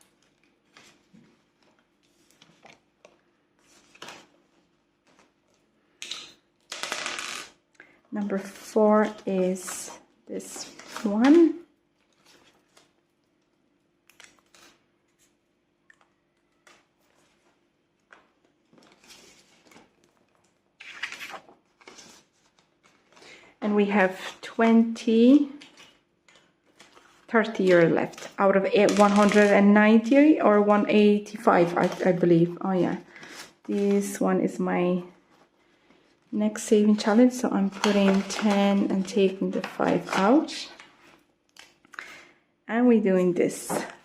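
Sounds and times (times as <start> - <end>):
paper rustling: 0.0 - 5.7, 16.5 - 23.4, 25.6 - 30.2, 37.0 - 42.1
banknotes rustling: 26.6 - 34.2, 36.7 - 41.3.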